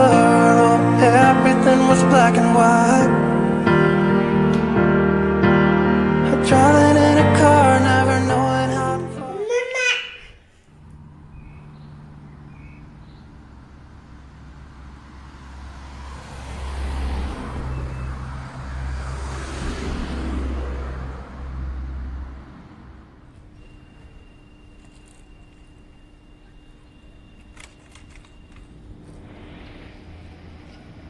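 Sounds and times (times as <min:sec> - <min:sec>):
low motor hum: 0:10.6 - 0:17.8, 0:21.6 - 0:31.0
rushing noise: 0:27.9 - 0:31.0.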